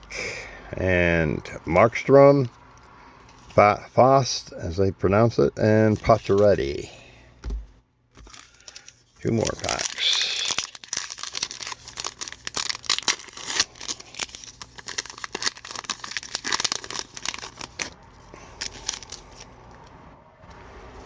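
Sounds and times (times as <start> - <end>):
wrapper being torn and crinkled: 8.3 - 19.5.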